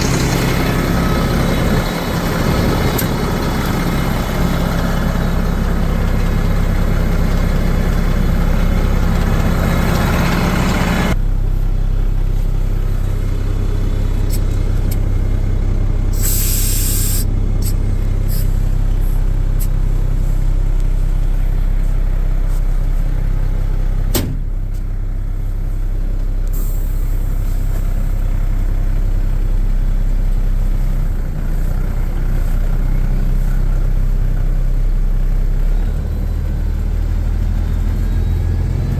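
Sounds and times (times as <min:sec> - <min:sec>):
diesel truck engine idling: 0:00.0 - 0:38.9
air release hiss: 0:16.2 - 0:18.6, 0:26.5 - 0:27.6.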